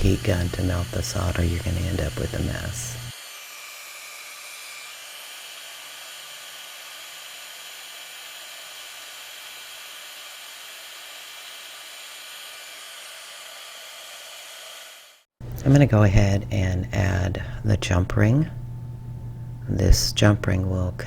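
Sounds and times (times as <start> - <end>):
heat gun blowing: 0.0 - 15.3.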